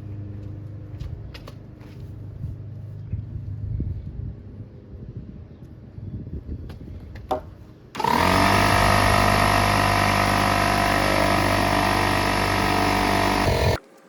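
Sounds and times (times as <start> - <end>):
motor running loudly: 8.0 - 13.8.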